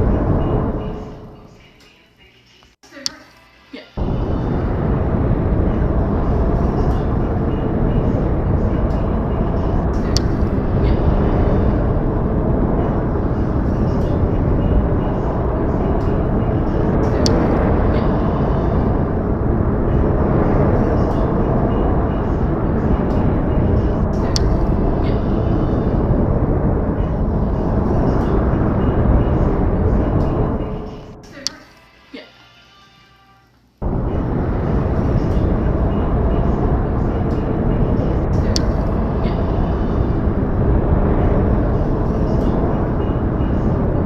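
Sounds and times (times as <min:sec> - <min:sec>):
low rushing noise outdoors: 0:00.0 - 0:02.3, 0:03.6 - 0:32.1, 0:33.6 - 0:44.0.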